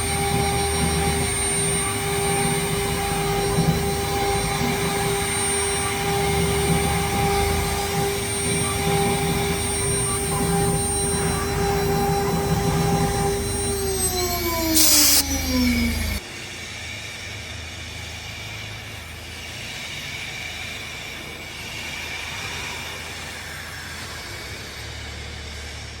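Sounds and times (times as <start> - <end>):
router spindle whining: 0.0 - 16.2
steady machine hum: 0.0 - 16.2.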